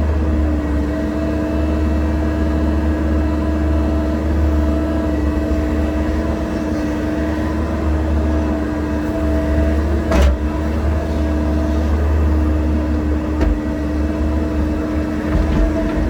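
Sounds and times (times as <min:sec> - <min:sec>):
excavator diesel engine running: 0:00.0 - 0:16.0.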